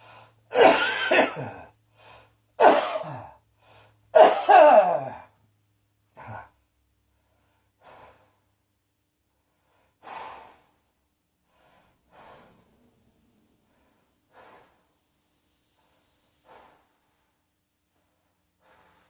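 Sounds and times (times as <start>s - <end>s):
person breathing audibly: 6.1s - 8.6s, 9.3s - 19.0s.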